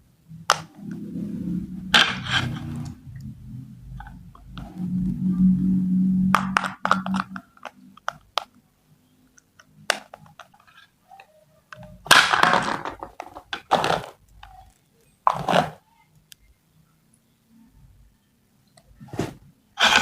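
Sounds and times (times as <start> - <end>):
low steady hum: 0.0 - 10.6.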